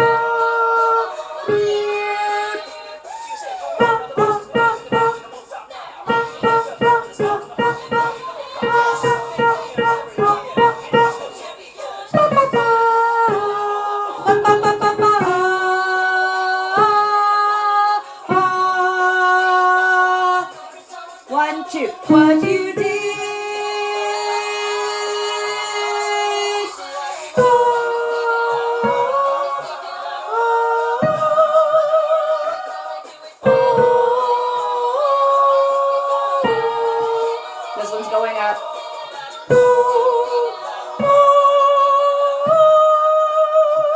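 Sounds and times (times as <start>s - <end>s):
person singing long held notes: 0.0s - 20.7s, 21.3s - 38.8s, 39.5s - 43.9s
instrument chord: 3.8s - 5.4s, 6.1s - 11.4s.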